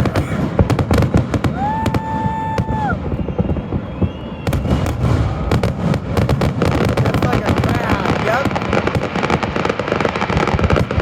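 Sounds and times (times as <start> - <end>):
firework whistle: 0.0 - 8.4
fireworks bangs and crackling: 0.0 - 11.0.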